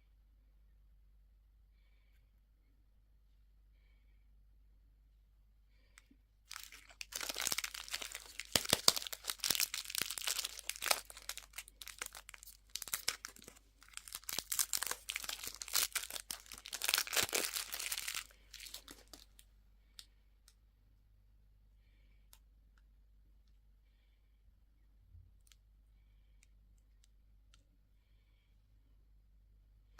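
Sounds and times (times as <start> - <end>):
candy wrapper crinkling: 6.5 - 19.4.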